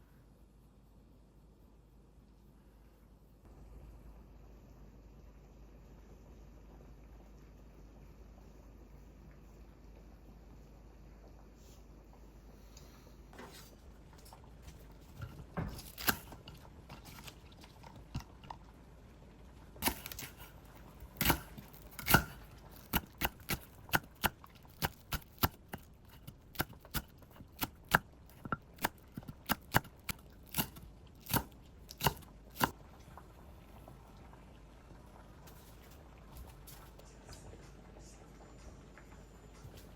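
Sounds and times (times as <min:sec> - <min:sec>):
knocks and clicks of food preparation: 0:14.2 - 0:18.7, 0:21.0 - 0:32.8.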